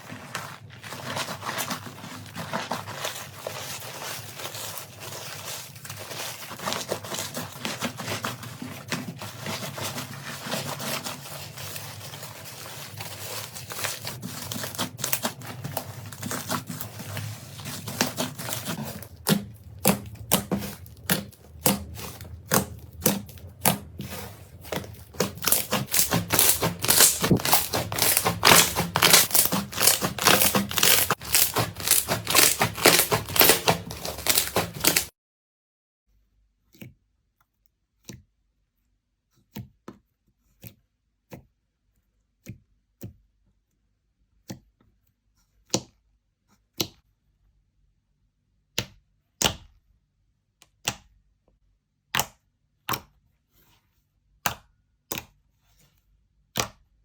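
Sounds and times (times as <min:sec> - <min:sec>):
crunchy slime crackling: 0:00.0 - 0:35.1
slime popping and snapping: 0:18.1 - 0:35.1.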